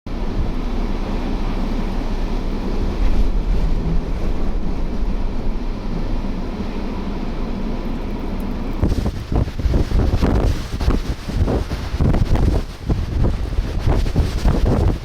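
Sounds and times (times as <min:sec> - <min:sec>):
strong wind buffeting microphone: 0:00.1 - 0:15.0.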